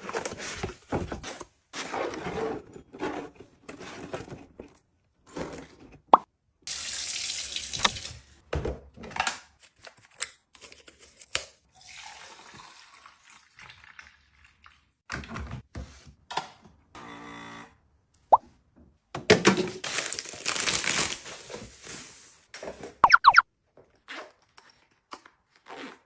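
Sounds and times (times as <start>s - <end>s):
water running: 6.7s - 8.3s.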